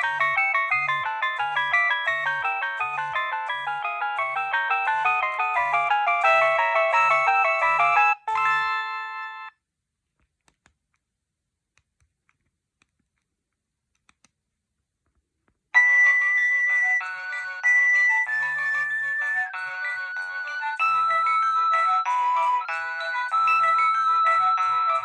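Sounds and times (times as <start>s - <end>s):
phone ringtone melody: 0.0s - 9.6s, 15.8s - 25.0s.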